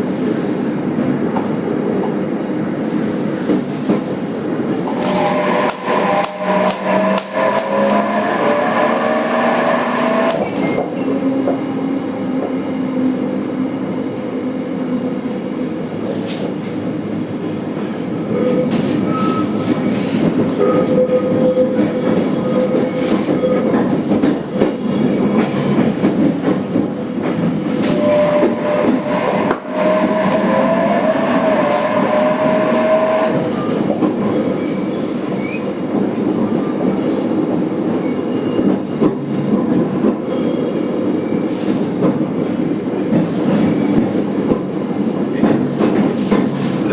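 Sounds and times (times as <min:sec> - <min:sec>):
wheels rumbling on rail: 0:00.0 - 0:46.9
high wheel squeal: 0:17.0 - 0:17.6, 0:18.4 - 0:19.9, 0:20.7 - 0:35.6.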